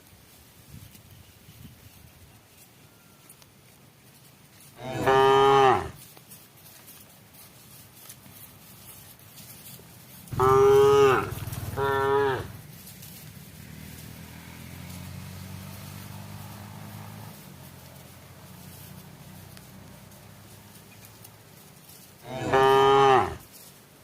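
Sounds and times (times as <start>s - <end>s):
cattle mooing: 4.8s - 6.0s, 10.3s - 12.6s, 22.2s - 23.4s.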